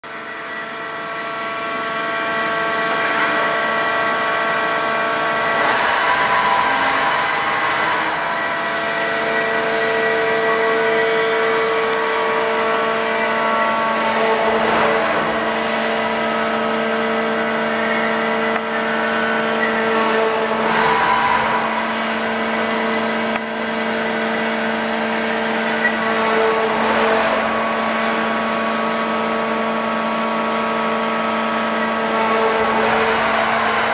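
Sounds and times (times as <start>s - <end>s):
milling machine spindle whining: 0.1s - 33.9s
cutting noise: 5.5s - 16.4s.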